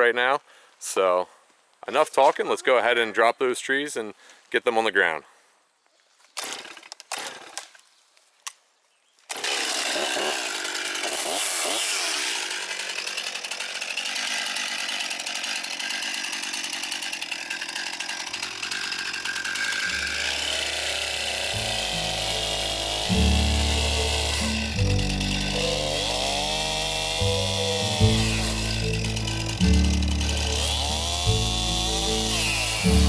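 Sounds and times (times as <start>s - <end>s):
chainsaw cutting tree: 6.4s - 7.8s, 9.3s - 33.0s.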